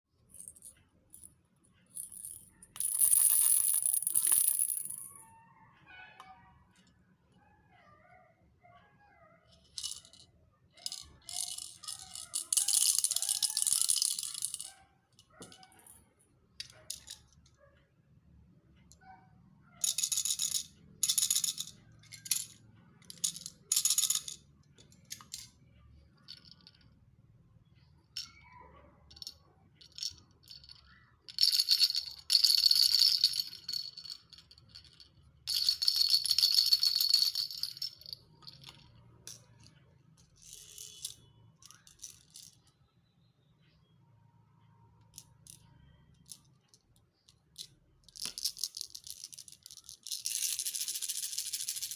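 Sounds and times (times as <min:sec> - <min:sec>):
baby rattle shaking: 0:02.0 - 0:05.2, 0:09.6 - 0:14.8, 0:29.2 - 0:39.4, 0:48.1 - 0:51.9.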